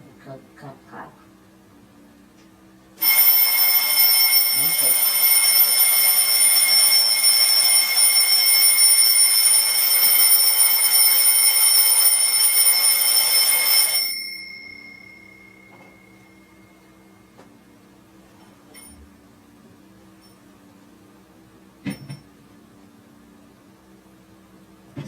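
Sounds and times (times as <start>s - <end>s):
alarm clock bell ringing: 3.0s - 16.6s.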